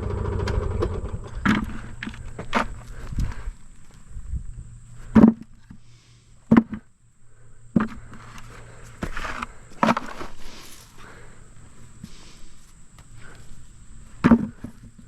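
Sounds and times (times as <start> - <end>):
soil and potatoes scraping: 7.8 - 11.2
potatoes knocking into pail: 14.2 - 14.7.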